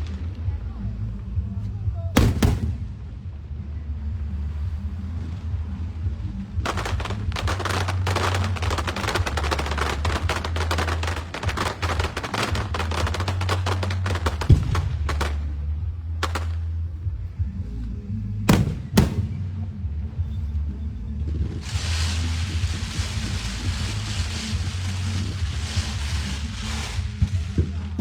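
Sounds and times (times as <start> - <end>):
fireworks crackling barrage: 0.0 - 17.4, 18.5 - 20.2, 21.2 - 28.0
fireworks bangs: 2.2 - 3.2, 6.7 - 16.8, 18.5 - 19.6, 21.4 - 28.0.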